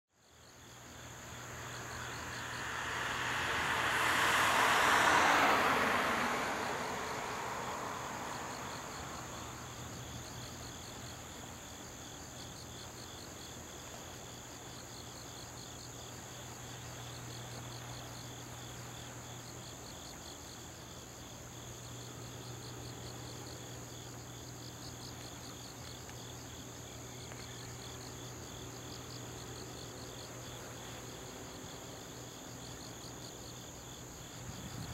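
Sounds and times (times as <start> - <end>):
insects trilling: 0.2 - 34.9
rushing noise: 1.2 - 9.2.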